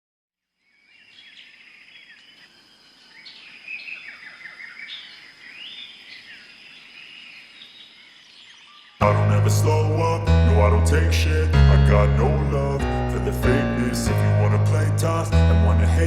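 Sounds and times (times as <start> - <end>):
small birds chirping and trilling: 0.5 - 10.2.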